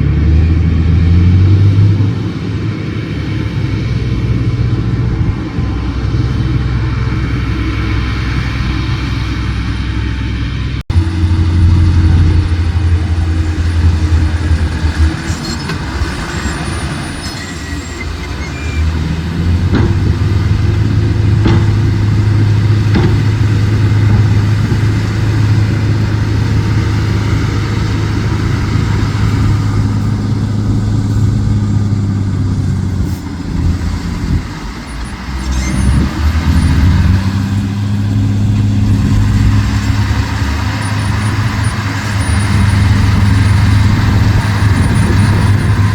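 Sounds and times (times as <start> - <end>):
heavy diesel engine running: 0.0 - 45.9
sharp knocks: 19.5 - 25.6.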